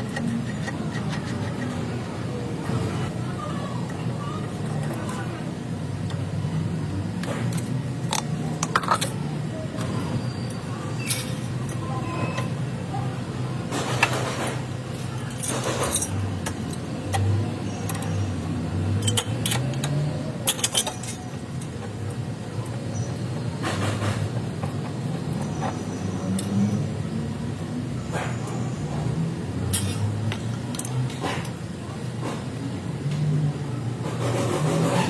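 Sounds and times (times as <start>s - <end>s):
metallic clicks: 19.0s - 21.8s.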